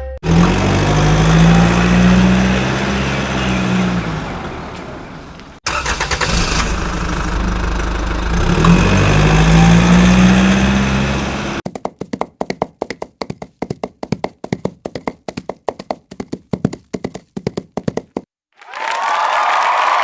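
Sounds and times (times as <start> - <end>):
vehicle engine revving: 0.2 - 11.6.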